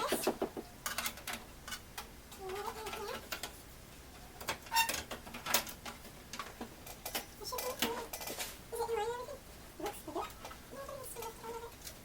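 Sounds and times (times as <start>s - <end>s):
computer parts clicking and tapping: 0.0s - 3.5s.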